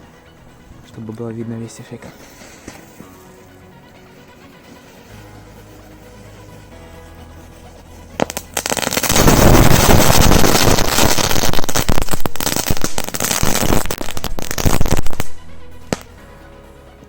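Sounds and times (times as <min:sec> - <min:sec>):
fireworks cracking and popping: 0:02.2 - 0:03.4, 0:07.4 - 0:16.2.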